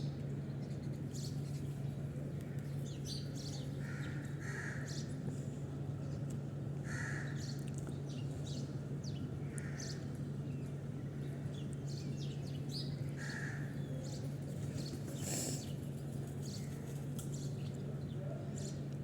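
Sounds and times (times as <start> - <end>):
crows cawing: 3.8 - 4.9, 6.8 - 7.4.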